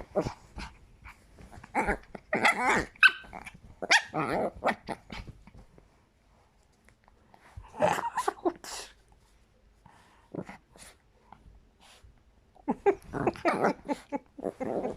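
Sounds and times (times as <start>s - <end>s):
small dog squeaking: 2.4s - 4.2s.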